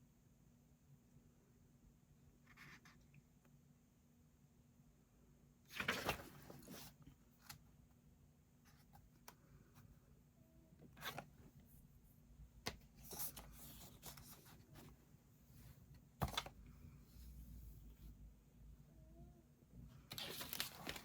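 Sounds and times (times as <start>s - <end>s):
paper page rustling: 5.7s - 6.9s, 20.1s - 21.0s.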